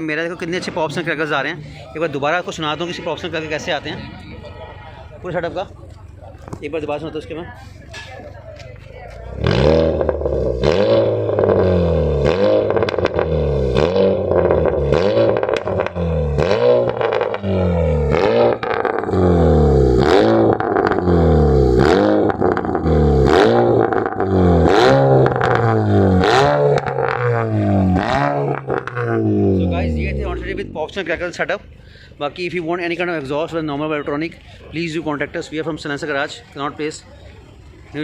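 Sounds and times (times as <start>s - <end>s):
exhaust pops and crackles: 5.2s - 31.4s
car engine revving: 9.1s - 31.3s.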